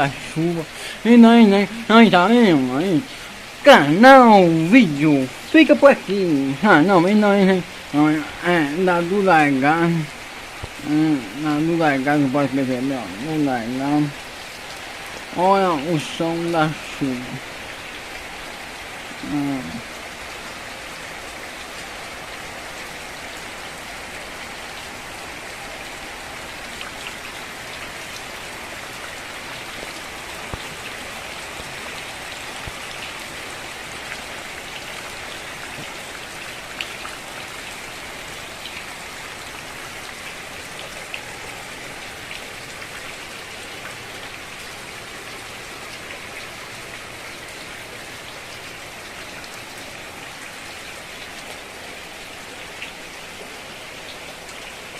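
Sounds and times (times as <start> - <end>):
heavy rain falling: 0.0 - 54.9
raindrops ticking on hard surfaces: 0.0 - 54.9.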